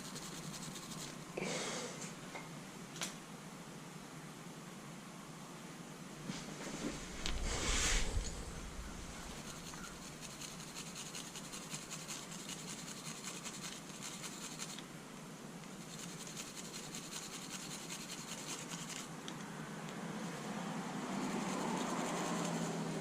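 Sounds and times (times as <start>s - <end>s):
tool scratching bolt threads: 9.1s - 14.8s, 15.8s - 19.1s.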